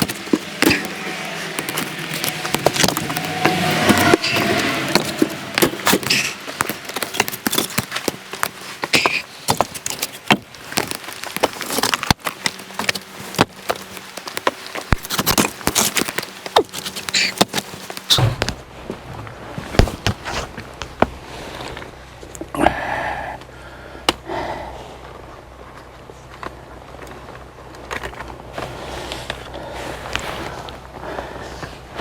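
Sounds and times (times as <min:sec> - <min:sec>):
logs knocking together: 0:00.0 - 0:21.8
low steady hum: 0:00.0 - 0:32.0.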